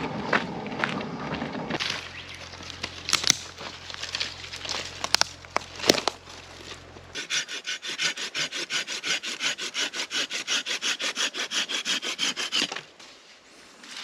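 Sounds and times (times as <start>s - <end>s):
hand saw cutting firewood: 7.1s - 12.9s.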